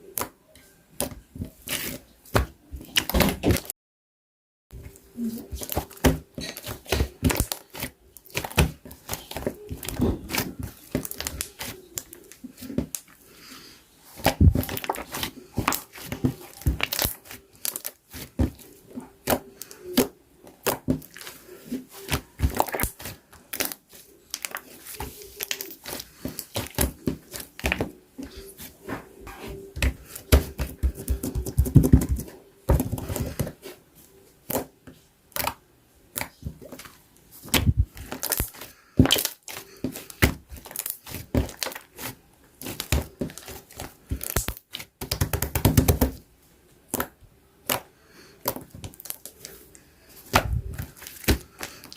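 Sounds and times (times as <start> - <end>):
slime kneaded by hand: 0.0 - 3.7, 4.8 - 13.3, 14.0 - 51.9
slime fast crackling: 14.2 - 21.4.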